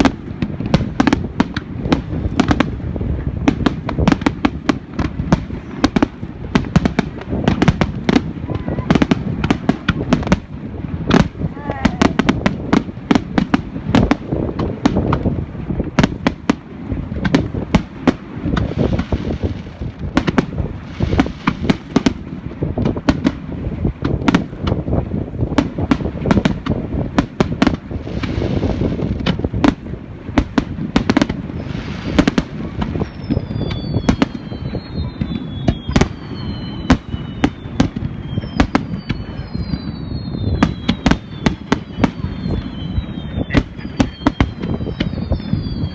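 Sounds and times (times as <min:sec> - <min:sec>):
fireworks bangs and crackling: 0:00.0 - 0:45.9
falling firework whistles: 0:31.0 - 0:45.9.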